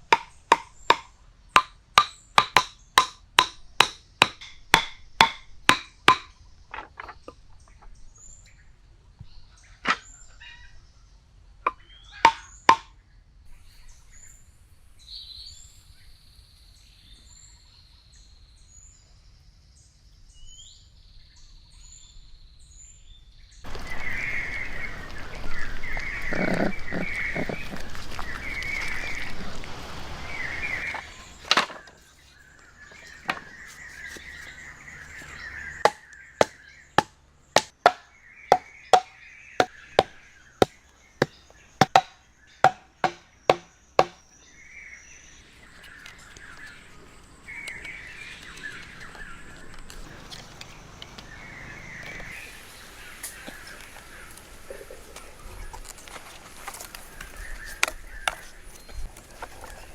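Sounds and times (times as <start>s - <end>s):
sharp ringing knocks: 0.0s - 6.4s, 35.9s - 40.8s, 41.8s - 44.2s.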